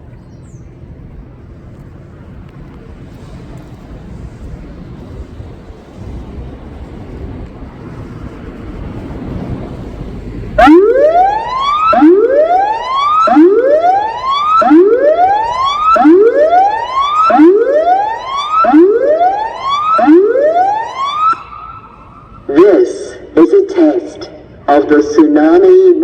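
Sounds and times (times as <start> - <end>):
wind noise on microphone: 0.0 - 21.2
siren rising whoop sweeps: 10.6 - 23.8.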